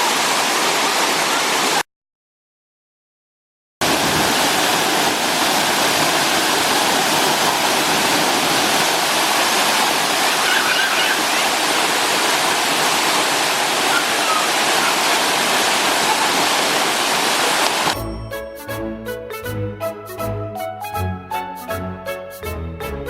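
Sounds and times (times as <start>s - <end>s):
waterfall and stream rushing: 0.0s - 1.8s, 3.8s - 18.0s.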